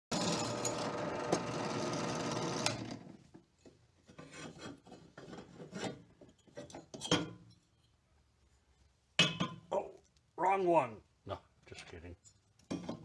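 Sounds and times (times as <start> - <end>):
drill grinding into metal: 0.1 - 3.0
scraping and handling sounds: 3.2 - 8.0.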